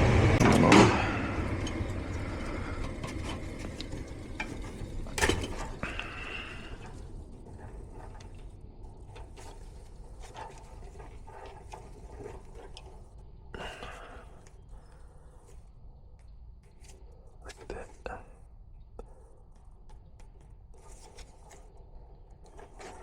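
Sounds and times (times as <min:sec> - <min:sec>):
furnace motor running: 0:00.0 - 0:15.6.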